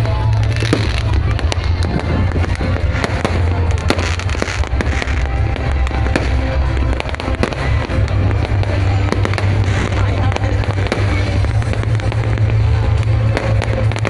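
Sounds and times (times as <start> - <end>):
fireworks bangs and crackles: 0.0 - 14.0
loud music: 0.0 - 14.0
steady low rumble: 0.0 - 14.0.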